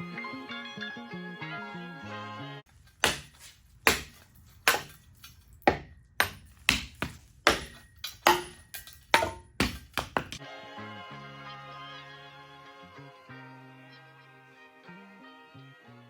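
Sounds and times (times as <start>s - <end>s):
background music: 0.0s - 3.2s, 10.4s - 16.0s
hammer striking steel: 2.9s - 10.4s.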